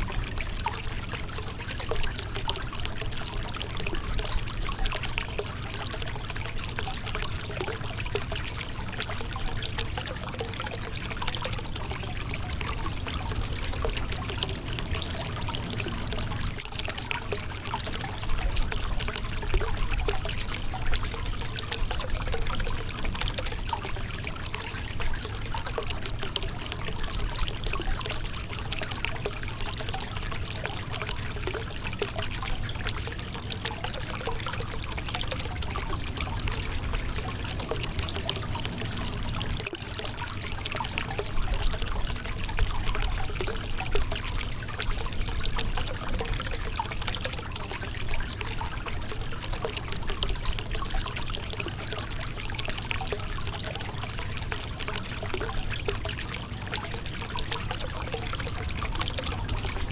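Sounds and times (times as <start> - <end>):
river water running over rocks: 10.3 - 27.4, 33.2 - 50.7, 57.0 - 59.9.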